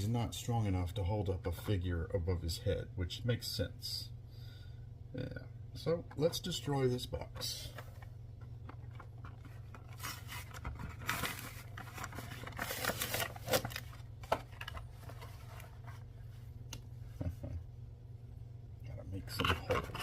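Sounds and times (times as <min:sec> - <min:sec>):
low steady hum: 0:00.0 - 0:20.0
plastic packaging rustling and ripping: 0:08.7 - 0:15.9.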